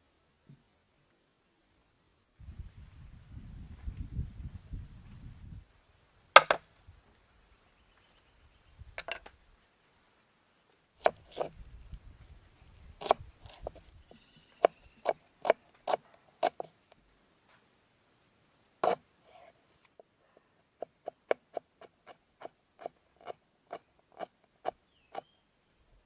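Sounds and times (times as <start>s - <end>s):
sharp wooden chopping knocks: 6.4s - 6.6s.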